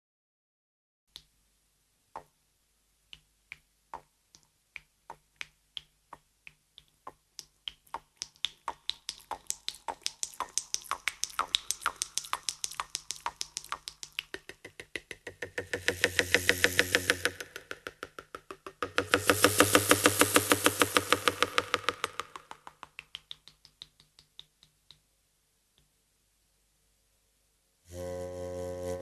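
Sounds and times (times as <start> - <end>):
sharp percussive strikes: 8.6 - 23.0.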